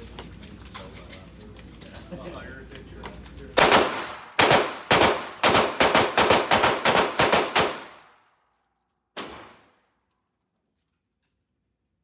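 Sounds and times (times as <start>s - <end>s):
rapid gunshots: 3.6s - 8.0s.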